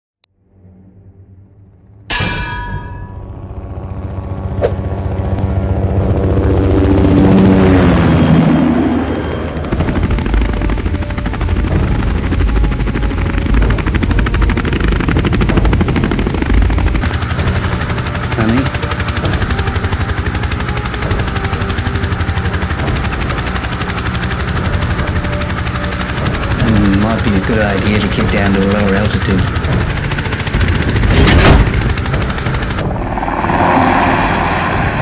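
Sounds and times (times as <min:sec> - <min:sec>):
rumble: 0:00.4 - 0:35.0
sudden ringing hit: 0:02.1 - 0:05.3
helicopter rotor chop: 0:03.0 - 0:35.0.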